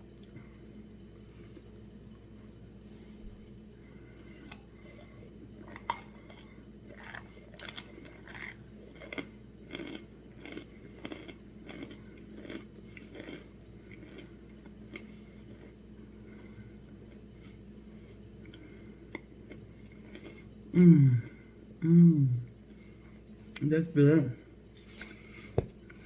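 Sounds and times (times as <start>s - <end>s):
person chewing crunchy food: 0.0s - 21.6s.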